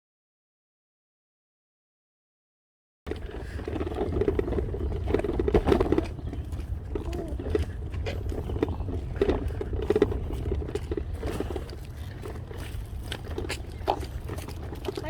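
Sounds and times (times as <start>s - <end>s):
footsteps on a path: 3.1s - 15.0s
wind rumble on microphone: 3.1s - 15.0s.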